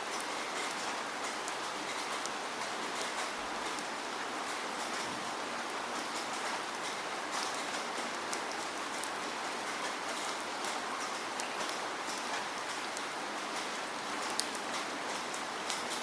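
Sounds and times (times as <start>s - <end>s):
raindrops ticking on a surface: 0.0s - 16.0s.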